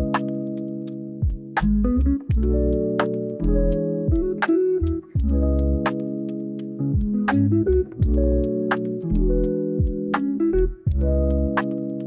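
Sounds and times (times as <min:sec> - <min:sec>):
keyboard and bass notes: 0:00.0 - 0:12.0
steady percussion beat: 0:01.2 - 0:01.7, 0:02.3 - 0:03.1, 0:04.1 - 0:04.4, 0:07.0 - 0:07.3, 0:09.8 - 0:10.3
plucked melody: 0:01.6 - 0:12.0.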